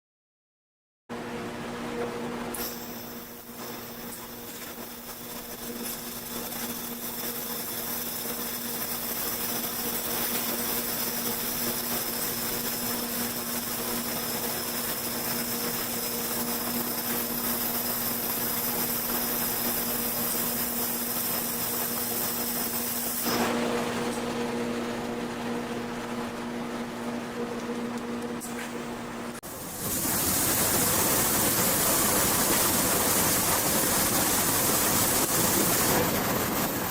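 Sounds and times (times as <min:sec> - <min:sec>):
laser welder hissing: 0:02.5 - 0:23.5, 0:29.4 - 0:36.9
welding machine hum: 0:02.5 - 0:36.9.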